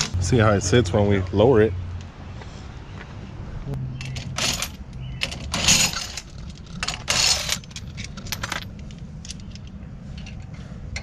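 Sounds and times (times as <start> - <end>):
metal parts clinking and rattling: 4.0 - 11.0.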